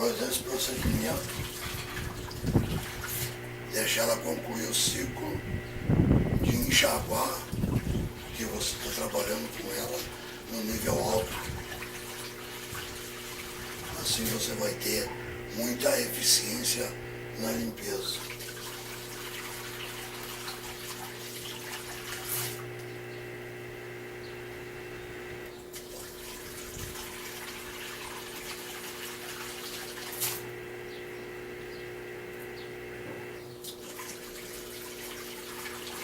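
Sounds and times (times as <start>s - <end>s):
washing machine motor hum: 0.0s - 36.0s
water splashing: 0.5s - 3.6s, 6.5s - 15.0s, 17.8s - 22.7s, 25.7s - 30.5s, 33.7s - 36.0s.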